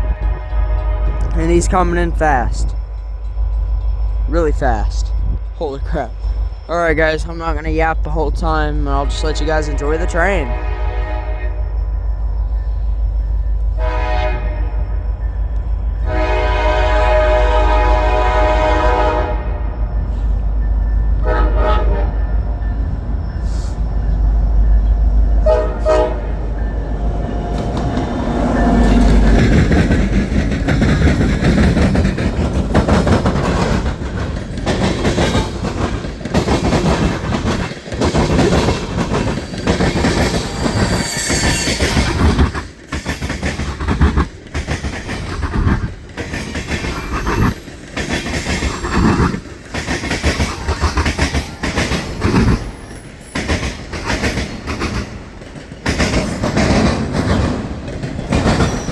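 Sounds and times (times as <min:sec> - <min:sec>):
locomotive horn: 0:00.0 - 0:01.9, 0:09.0 - 0:11.7, 0:13.8 - 0:14.8, 0:16.1 - 0:19.8, 0:21.2 - 0:22.2, 0:25.4 - 0:29.7
train wheels clattering over rail joints: 0:25.4 - 0:58.9.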